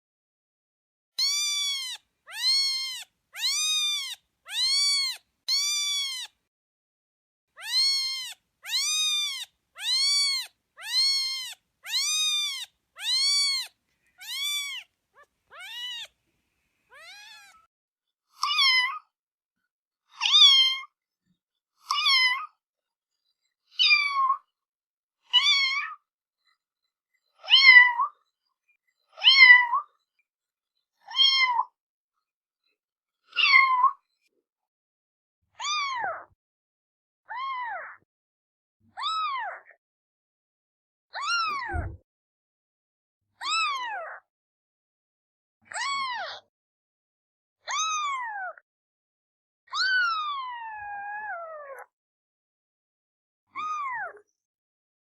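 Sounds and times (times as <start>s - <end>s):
cat meowing: 1.2s - 6.4s, 7.6s - 16.2s, 16.9s - 17.7s, 18.4s - 19.1s, 20.2s - 20.9s, 21.9s - 22.5s, 41.2s - 42.0s.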